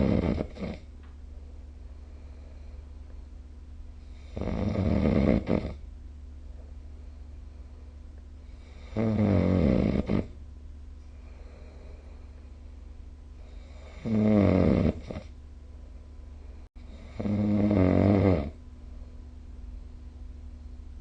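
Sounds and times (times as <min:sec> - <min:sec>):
person snoring: 0:00.0 - 0:00.9, 0:04.2 - 0:05.8, 0:08.6 - 0:10.4, 0:13.4 - 0:15.3, 0:16.9 - 0:18.6
steady low hum: 0:00.0 - 0:21.0.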